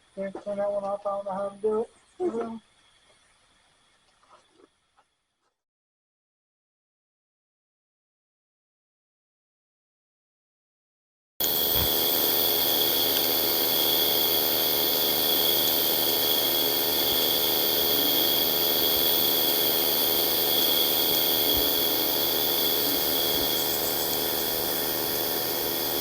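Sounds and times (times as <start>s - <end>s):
steady hum with hiss: 0.0s - 5.2s, 11.4s - 26.0s.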